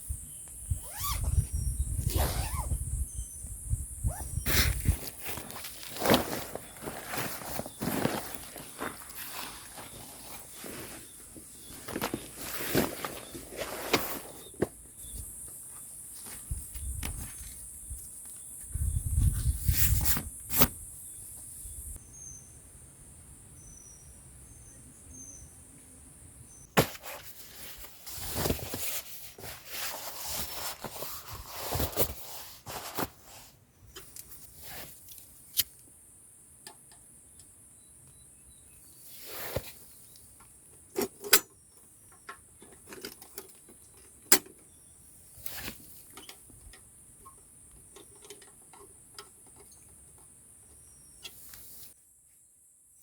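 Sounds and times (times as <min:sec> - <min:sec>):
insects trilling: 0:00.0 - 0:19.1
rustling: 0:04.1 - 0:14.7, 0:26.8 - 0:35.6.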